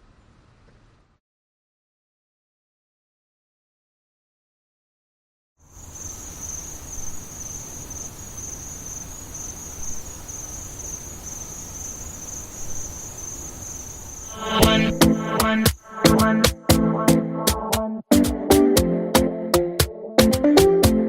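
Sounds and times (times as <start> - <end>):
crickets chirping: 5.6 - 16.0.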